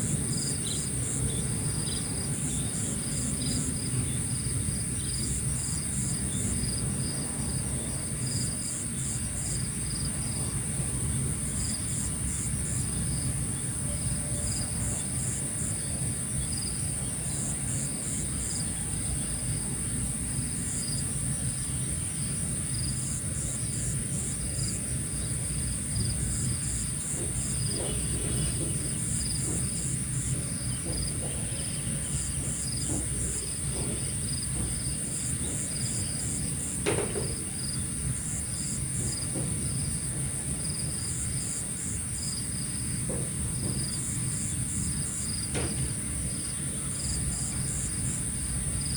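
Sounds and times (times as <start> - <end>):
insects trilling: 0.0 - 48.9
insect chirps: 11.1 - 48.9.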